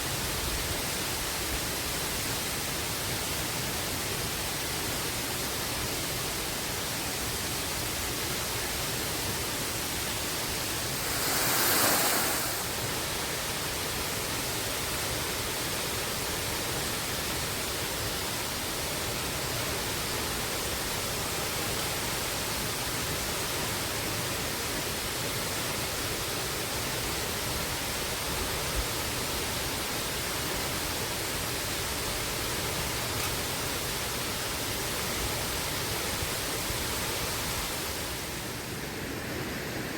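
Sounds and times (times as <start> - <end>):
waterfall rushing: 10.4 - 13.7.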